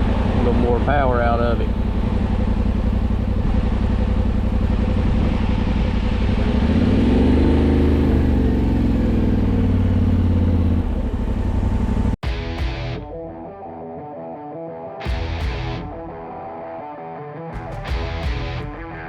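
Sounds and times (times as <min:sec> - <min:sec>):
motorcycle engine running: 0:00.0 - 0:13.0, 0:15.1 - 0:16.0, 0:17.7 - 0:19.0.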